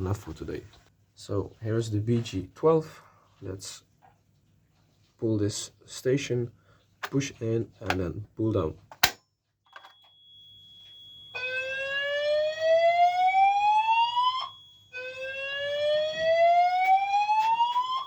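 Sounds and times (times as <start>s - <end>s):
thin steady high tone: 9.7s - 12.5s, 14.2s - 15.6s
rising whoop alarm tone: 11.4s - 18.0s.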